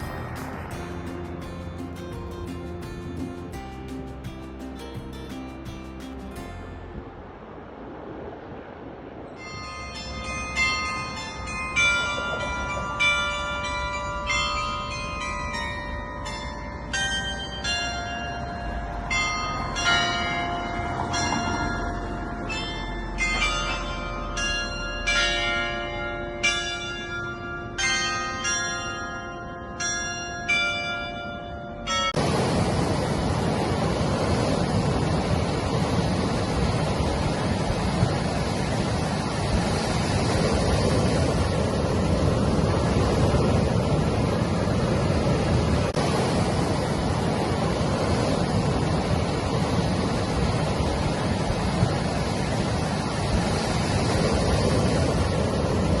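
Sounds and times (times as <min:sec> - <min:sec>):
bell-like struck notes melody: 0:00.0 - 0:06.8, 0:09.4 - 0:32.2
steady rushing noise: 0:00.0 - 0:24.8, 0:32.1 - 0:56.0.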